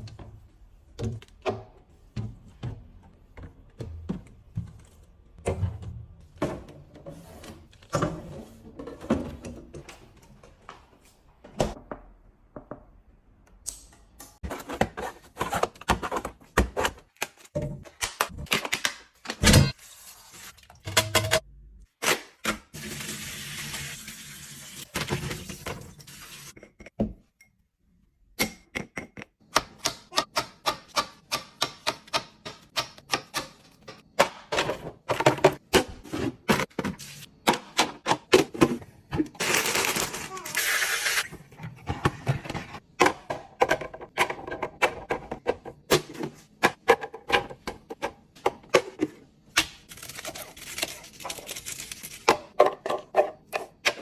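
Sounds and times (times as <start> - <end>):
plastic containers clicking and thunking: 14.4 - 19.4, 28.8 - 39.4, 41.3 - 49.8, 52.3 - 54.0.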